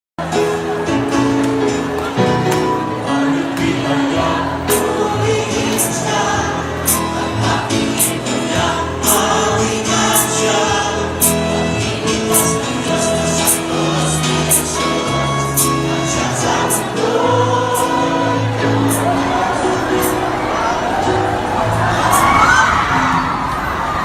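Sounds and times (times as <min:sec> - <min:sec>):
choir singing held notes: 0:00.2 - 0:24.0
music beat: 0:05.6 - 0:20.3.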